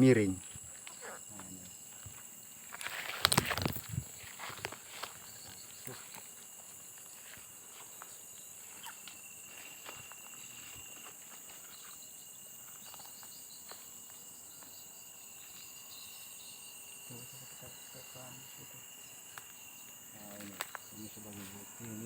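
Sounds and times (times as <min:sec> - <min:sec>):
insects trilling: 0:00.0 - 0:22.0
soft footsteps: 0:01.4 - 0:14.8.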